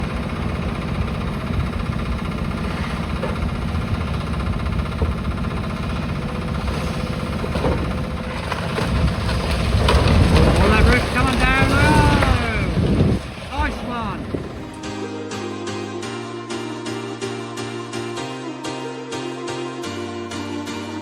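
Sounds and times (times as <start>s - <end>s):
heavy diesel engine running: 0.0s - 15.2s.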